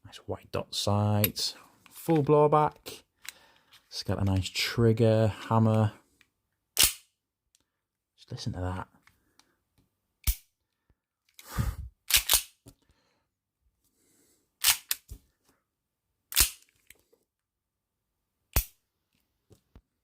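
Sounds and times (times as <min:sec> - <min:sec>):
pistol slide cycling: 0:12.1 - 0:12.6, 0:14.6 - 0:15.2, 0:16.3 - 0:16.7.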